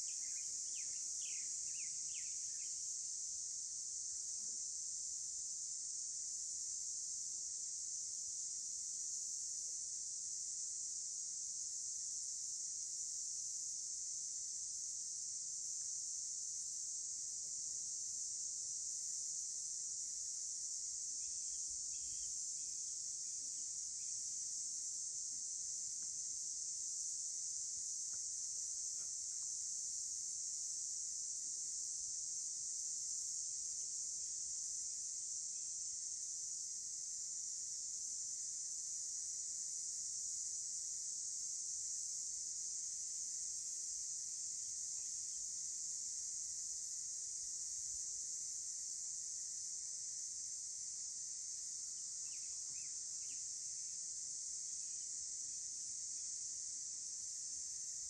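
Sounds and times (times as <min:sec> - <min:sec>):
faint chirps: 0:00.0 - 0:02.8, 0:21.2 - 0:22.4, 0:52.2 - 0:53.5
high-pitched insect chorus: 0:00.0 - 0:58.0.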